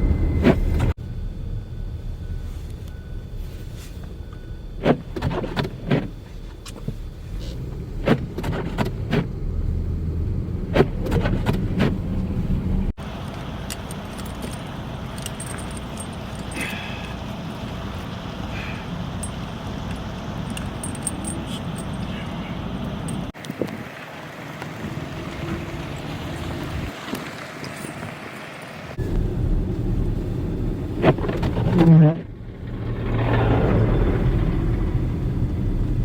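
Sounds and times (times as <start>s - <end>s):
low rumble of vehicles: 0.0s - 36.0s
metallic clinks and knocks: 13.6s - 17.0s, 19.2s - 22.3s.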